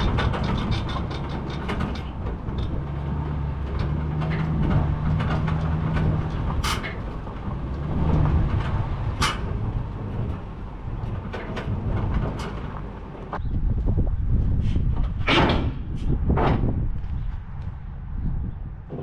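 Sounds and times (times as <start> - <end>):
sharp rattles or clanks: 0.0 - 13.4
truck engine droning: 0.0 - 16.9.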